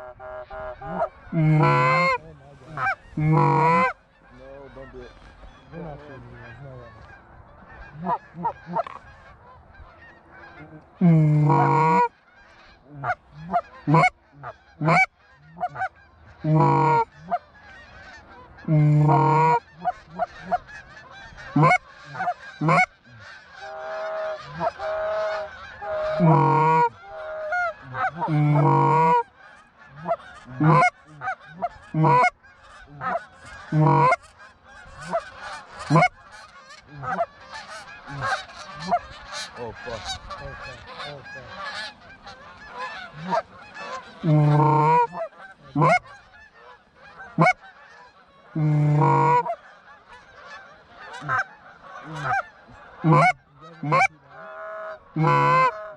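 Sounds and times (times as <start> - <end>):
goose honking: 0.0 - 55.9.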